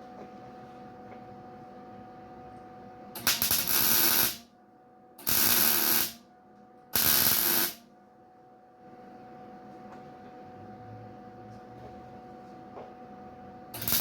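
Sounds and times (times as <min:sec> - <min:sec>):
welder hissing crackle: 0:03.2 - 0:04.4, 0:05.2 - 0:06.2, 0:07.0 - 0:07.8, 0:13.8 - 0:14.0.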